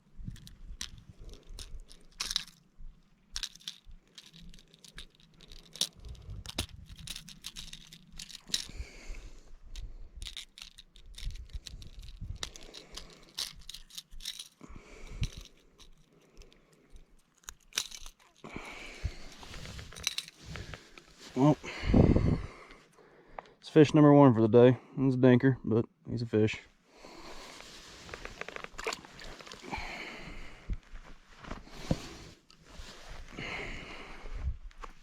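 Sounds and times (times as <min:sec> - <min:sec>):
handling clicks and rattles: 0:00.2 - 0:08.9, 0:09.7 - 0:21.2, 0:28.0 - 0:29.7
rustling: 0:00.2 - 0:21.6, 0:27.2 - 0:30.2, 0:30.8 - 0:33.4.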